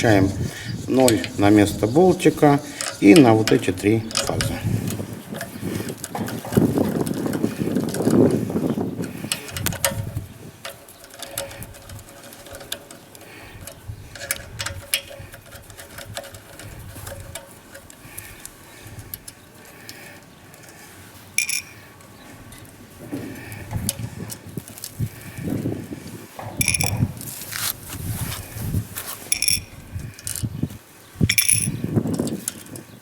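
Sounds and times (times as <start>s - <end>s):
hand tools clicking and tapping: 0.0s - 20.8s, 21.4s - 25.5s, 26.4s - 30.5s, 31.2s - 33.0s
rustling handling noise: 0.0s - 32.9s.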